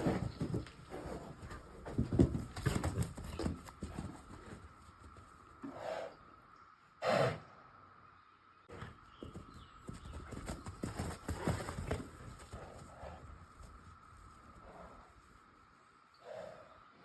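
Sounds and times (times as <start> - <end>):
horse hoofbeats thudding: 0.0 - 5.8, 8.7 - 15.3
horse snorts: 5.7 - 6.2, 7.0 - 7.6.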